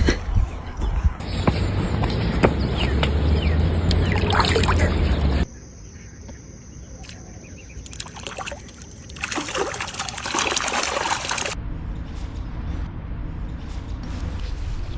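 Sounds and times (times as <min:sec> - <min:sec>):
water trickling and splashing: 0:03.9 - 0:05.3, 0:07.8 - 0:11.6
rush of water: 0:07.8 - 0:11.6.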